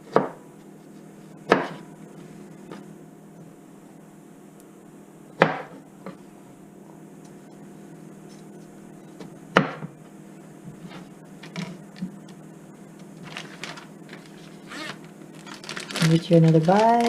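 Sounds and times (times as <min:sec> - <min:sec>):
knife chopping on cutting board: 0:00.0 - 0:00.4, 0:01.5 - 0:01.8
faint steady hum: 0:00.0 - 0:17.0
handling noise: 0:13.0 - 0:17.0.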